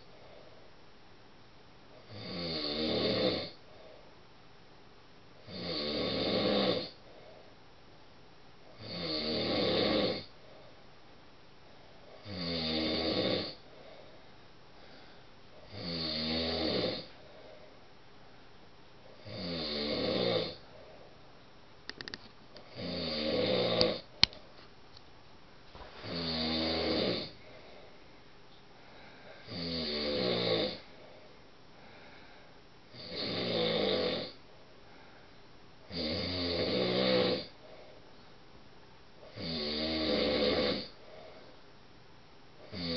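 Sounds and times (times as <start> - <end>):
man snoring: 2.1 - 3.6, 5.4 - 7.0, 8.8 - 10.3, 12.2 - 13.6, 15.7 - 17.2, 19.2 - 20.6, 22.7 - 24.1, 26.0 - 27.4, 29.4 - 30.9, 32.9 - 34.4, 35.9 - 37.6, 39.3 - 41.0, 42.7 - 42.9
sharp click: 21.9 - 22.3.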